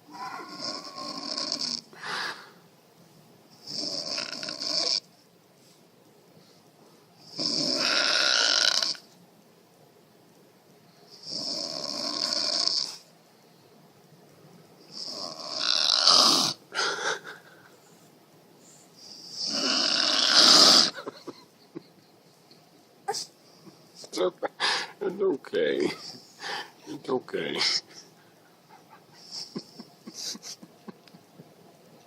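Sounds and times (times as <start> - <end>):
woman snoring loudly: 0.2 - 1.8, 3.6 - 5.0, 7.4 - 9.0, 11.2 - 13.0, 14.9 - 16.6, 19.4 - 21.0
quiet breathing: 1.9 - 2.7, 16.7 - 19.4, 24.5 - 25.0, 26.0 - 27.0.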